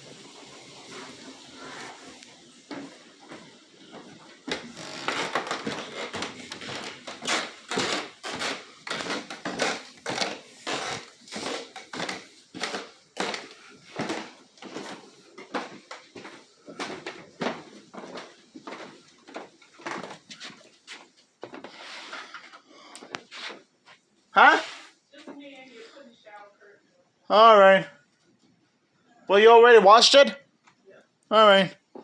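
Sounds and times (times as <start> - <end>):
footsteps indoors: 0.0 - 27.2, 28.0 - 29.1, 31.7 - 32.0.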